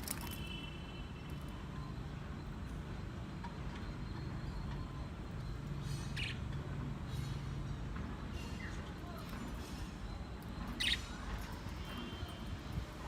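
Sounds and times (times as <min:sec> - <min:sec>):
budgerigars chirping: 0:05.8 - 0:06.5, 0:10.6 - 0:11.2.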